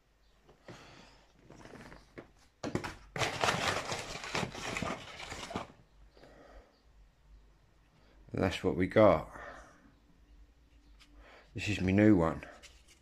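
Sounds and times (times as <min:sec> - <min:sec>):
packaging rustling and crinkling: 0:02.6 - 0:05.8.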